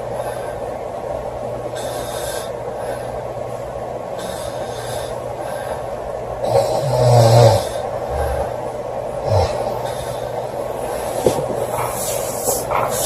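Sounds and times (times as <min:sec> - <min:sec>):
quiet airy breath: 0:00.0 - 0:06.5, 0:07.5 - 0:13.0
girl snoring: 0:06.4 - 0:08.6, 0:09.2 - 0:10.2.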